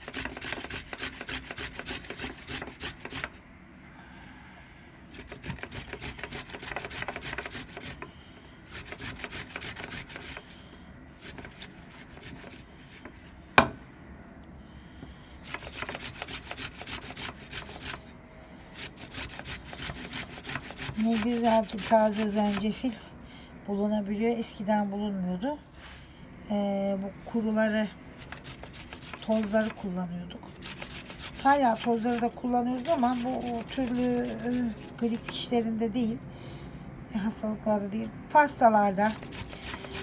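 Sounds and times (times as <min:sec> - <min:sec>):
ginger grating on hand grater: 0:00.0 - 0:03.3, 0:05.1 - 0:08.1, 0:08.7 - 0:10.5, 0:11.2 - 0:13.3, 0:15.4 - 0:18.0, 0:18.7 - 0:23.0, 0:28.2 - 0:35.6, 0:38.4 - 0:40.0.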